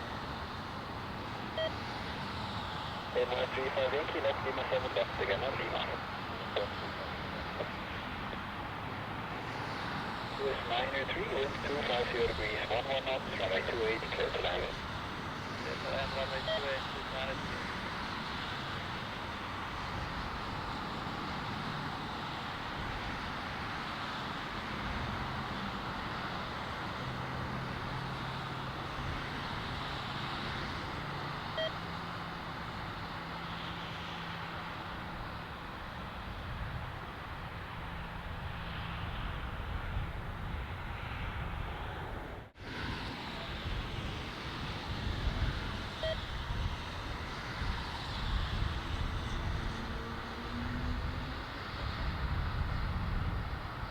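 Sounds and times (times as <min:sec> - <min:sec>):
jet engine rumble: 0:00.0 - 0:53.9
wind noise: 0:43.4 - 0:53.9.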